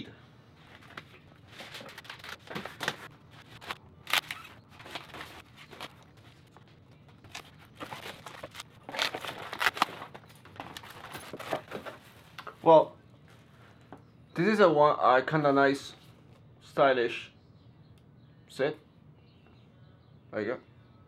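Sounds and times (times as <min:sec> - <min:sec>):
packaging crinkling and rustling: 0:00.8 - 0:12.2.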